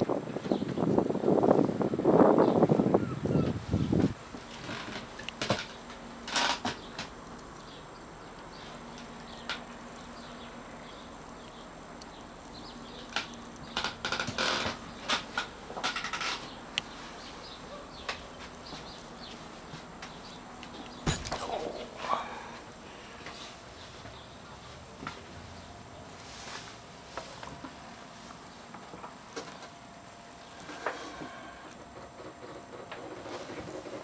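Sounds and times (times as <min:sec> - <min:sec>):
faint steady hum: 0:00.0 - 0:34.0.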